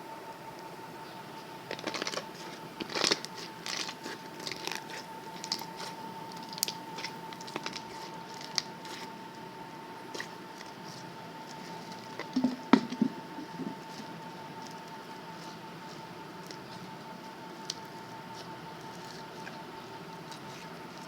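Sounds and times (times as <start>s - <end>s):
faint steady hum: 0.0s - 21.0s
slime crackling and popping: 1.7s - 9.4s.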